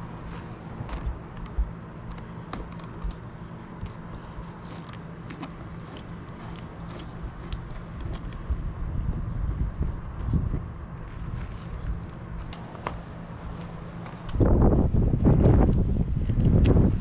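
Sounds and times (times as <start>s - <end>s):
steady low hum: 0.0s - 17.0s
hand tools clicking and tapping: 0.2s - 8.6s.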